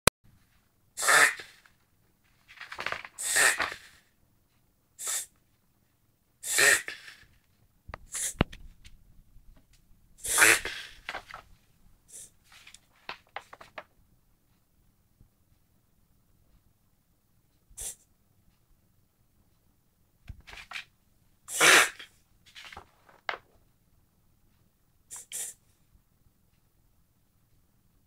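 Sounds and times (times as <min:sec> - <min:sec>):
dog reverse sneezing: 0:01.0 - 0:01.6, 0:03.2 - 0:04.0, 0:05.0 - 0:05.3, 0:06.4 - 0:07.2, 0:08.1 - 0:08.4, 0:10.2 - 0:11.2, 0:17.8 - 0:18.0, 0:21.5 - 0:22.1, 0:25.1 - 0:25.6.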